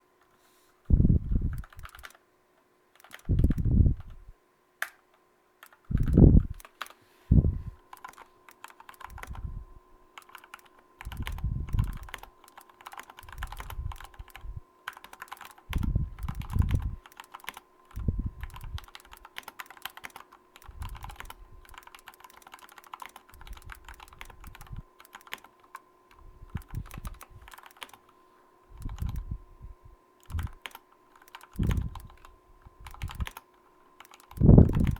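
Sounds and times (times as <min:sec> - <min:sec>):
mechanical keyboard keystroke clacks: 0:01.5 - 0:02.2, 0:03.0 - 0:04.2, 0:05.6 - 0:07.0, 0:07.9 - 0:09.4, 0:10.2 - 0:25.8, 0:26.5 - 0:28.0, 0:28.8 - 0:29.3, 0:30.2 - 0:34.9.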